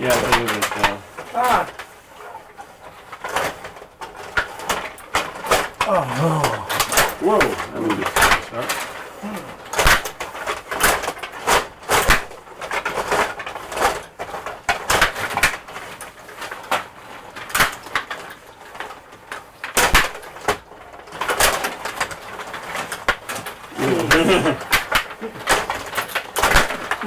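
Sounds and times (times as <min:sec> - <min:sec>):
rod hockey game clacks: 0:00.0 - 0:01.8, 0:04.1 - 0:08.9, 0:22.9 - 0:27.0.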